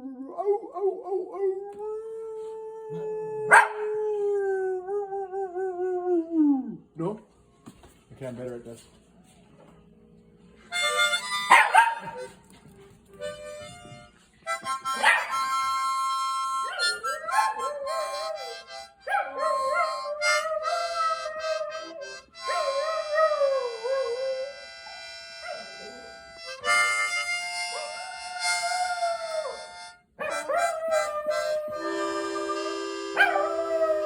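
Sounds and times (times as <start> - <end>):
dog howling: 0.0 - 6.8, 16.5 - 26.1, 27.7 - 34.0
harmonica chords: 10.6 - 34.0.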